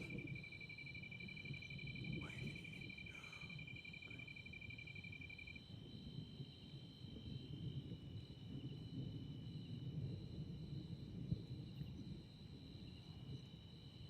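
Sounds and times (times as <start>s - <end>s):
low rumble: 0.0s - 4.8s
crickets trilling: 0.0s - 14.0s.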